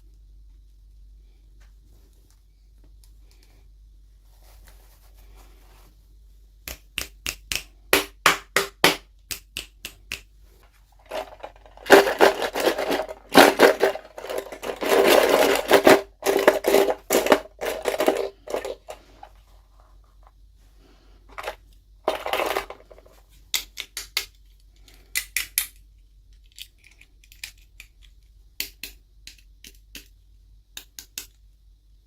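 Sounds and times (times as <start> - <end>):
packaging crackling and scraping: 11.0 - 19.4, 21.3 - 23.1.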